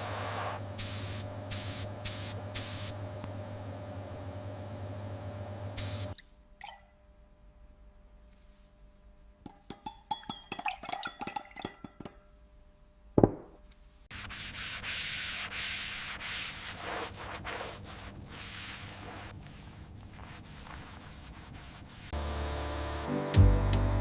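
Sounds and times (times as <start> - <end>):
steady rubbing like sanding: 14.1 - 22.2.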